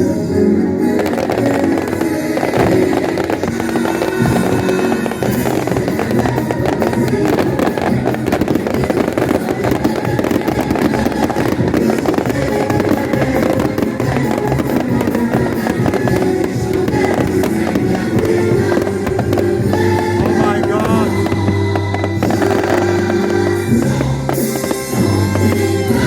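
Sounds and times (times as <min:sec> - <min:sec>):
fireworks bangs and crackles: 0:00.0 - 0:26.0
loud music: 0:00.0 - 0:26.0.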